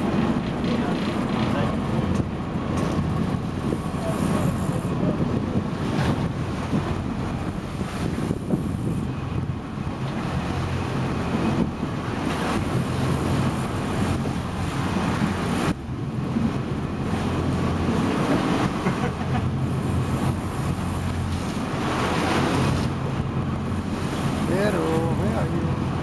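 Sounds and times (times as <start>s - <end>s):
boat engine droning: 0.0s - 26.0s
sea wash: 0.0s - 26.0s
wind buffeting microphone: 0.0s - 26.0s.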